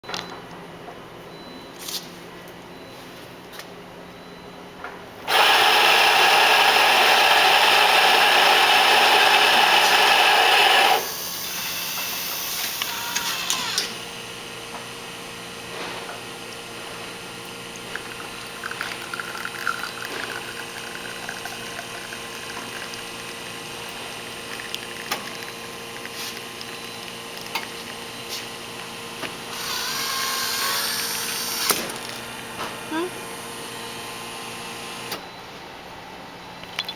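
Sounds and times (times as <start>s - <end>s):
espresso machine rushing: 5.3s - 14.1s, 16.9s - 35.1s
machine hum: 5.3s - 35.1s.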